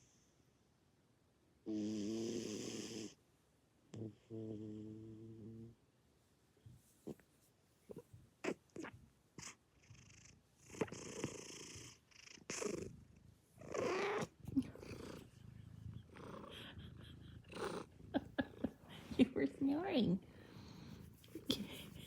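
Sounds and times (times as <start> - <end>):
cat snoring: 1.7 - 3.2, 4.0 - 5.7, 8.4 - 18.2.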